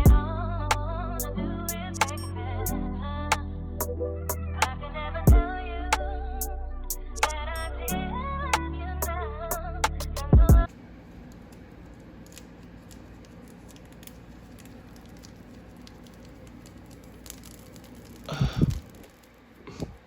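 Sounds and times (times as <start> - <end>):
faint rustling of packaging: 10.7 - 20.0.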